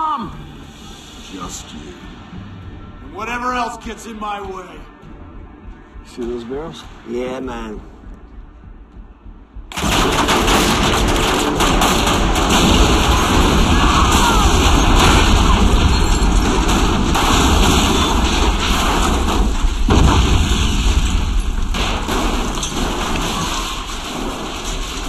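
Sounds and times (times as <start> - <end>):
explosion rumble with crackling: 9.7 - 25.0.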